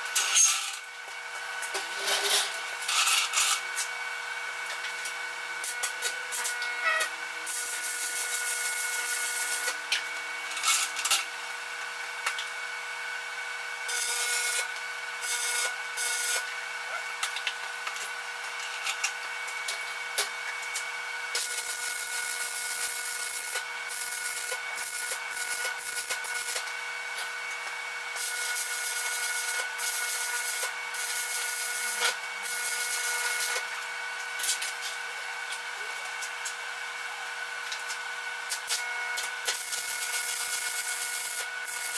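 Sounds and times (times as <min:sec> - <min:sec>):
arc welding crackling: 0:04.6 - 0:12.5, 0:13.9 - 0:16.5, 0:17.2 - 0:35.6, 0:37.7 - 0:41.9.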